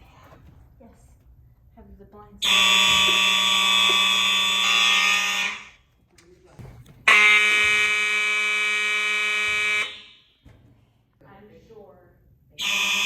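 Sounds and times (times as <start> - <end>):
fire alarm horns buzzing: 2.4 - 5.8, 7.0 - 10.5, 12.6 - 13.0.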